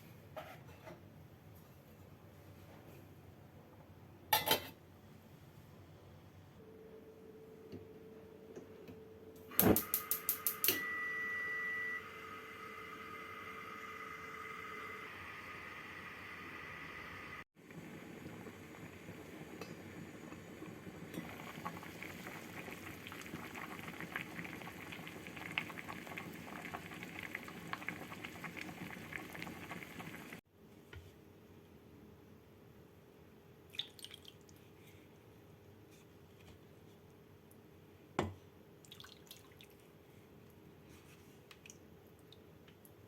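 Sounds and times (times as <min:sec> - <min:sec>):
soup bubbling at the boil: 0:12.8 - 0:30.4.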